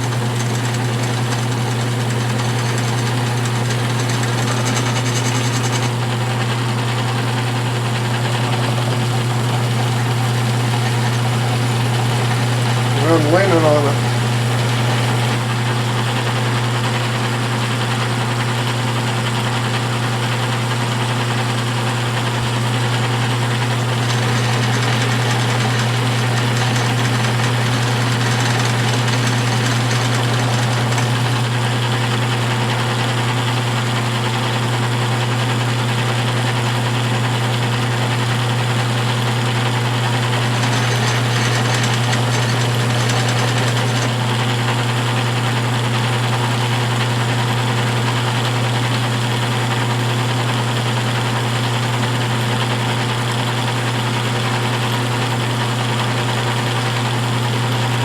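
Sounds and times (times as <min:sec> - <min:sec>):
edge burnisher motor humming: 0:00.0 - 0:16.0, 0:22.4 - 0:33.1, 0:39.6 - 0:45.2.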